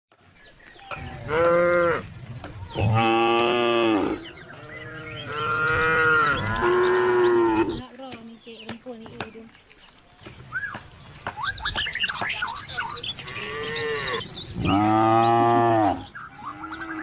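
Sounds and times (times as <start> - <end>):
cows mooing: 1.0 - 7.8, 13.2 - 17.0.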